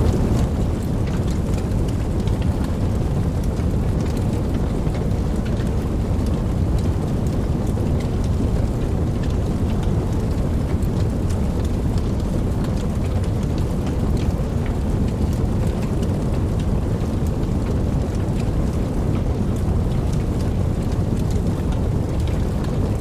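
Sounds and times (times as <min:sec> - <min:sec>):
deep low rumble: 0:00.0 - 0:00.8
raindrop ticks: 0:00.0 - 0:23.0
steady rain: 0:00.0 - 0:23.0.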